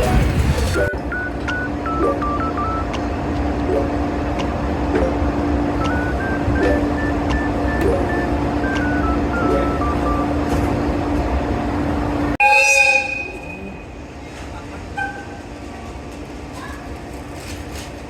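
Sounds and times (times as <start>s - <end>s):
train running noise: 0.0s - 18.0s
music with stepping melody: 5.8s - 10.6s
train horn: 12.4s - 13.8s.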